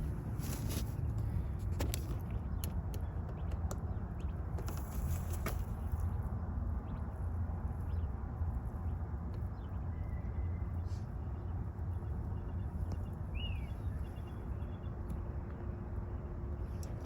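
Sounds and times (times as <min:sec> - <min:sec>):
steady low rumble: 0:00.0 - 0:17.0
bird chirps: 0:09.5 - 0:15.2.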